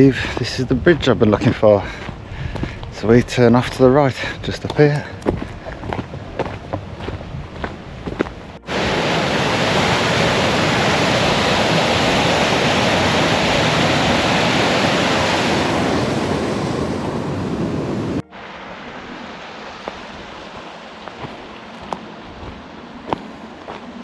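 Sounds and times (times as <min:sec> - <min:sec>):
footsteps: 0:00.2 - 0:08.7, 0:19.8 - 0:23.9
stream rushing: 0:01.2 - 0:24.0.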